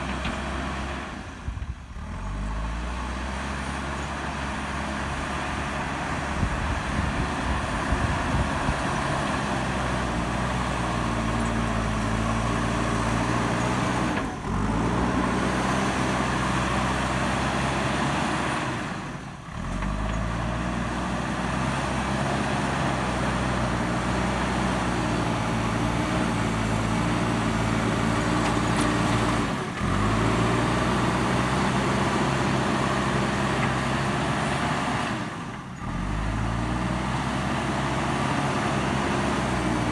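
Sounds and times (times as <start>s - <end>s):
diesel engine working under load: 0.0s - 39.9s.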